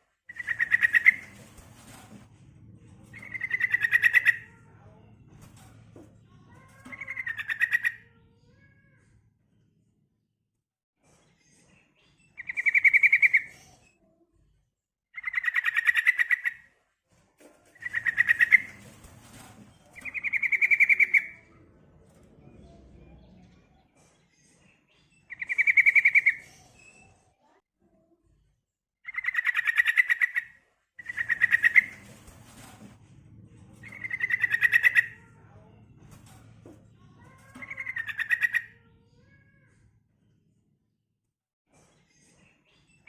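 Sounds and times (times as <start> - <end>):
bird rattling trills: 0.3 - 2.0, 17.8 - 19.4, 29.1 - 32.2, 33.9 - 35.2.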